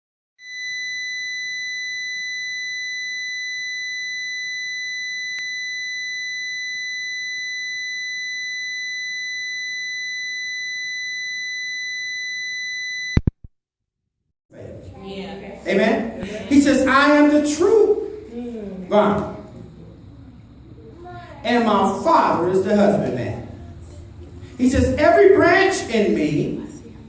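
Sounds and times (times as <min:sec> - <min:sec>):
high-pitched electronic hum: 0:00.4 - 0:13.3.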